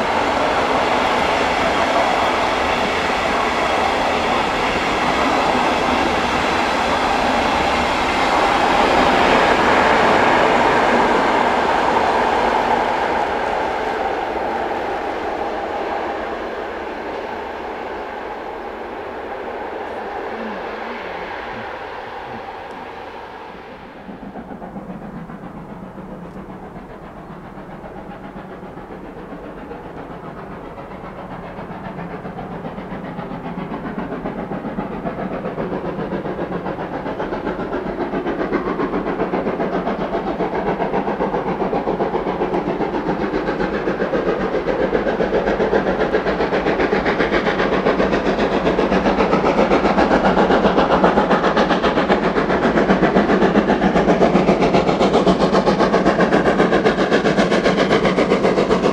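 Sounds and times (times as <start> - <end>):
steam hiss: 0.0 - 58.9
steam locomotive exhaust beats: 0.0 - 58.9.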